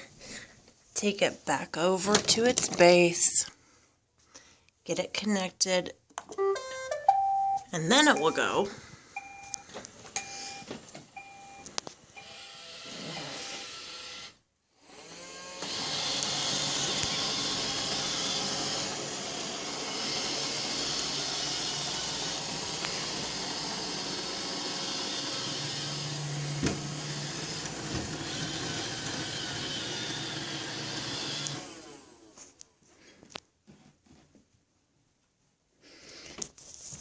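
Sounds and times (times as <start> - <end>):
robot vacuum running: 14.9 - 32.3.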